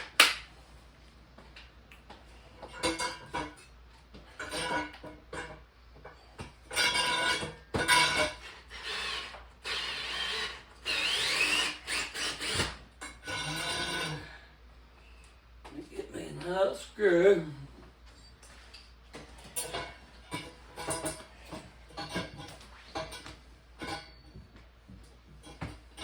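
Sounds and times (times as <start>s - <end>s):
cordless drill whining: 8.4s - 14.2s.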